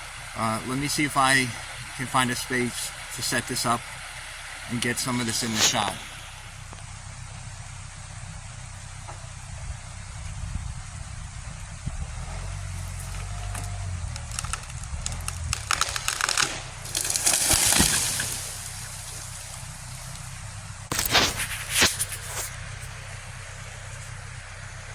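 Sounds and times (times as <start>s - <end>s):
tractor engine running: 0.0s - 24.9s
tree crashing through branches: 12.2s - 22.5s
tree trunk cracking: 12.2s - 22.5s.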